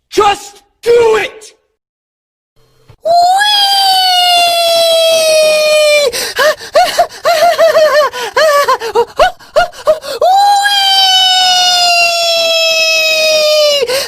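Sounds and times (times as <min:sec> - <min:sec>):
high-pitched voice screaming: 0:03.0 - 0:06.1.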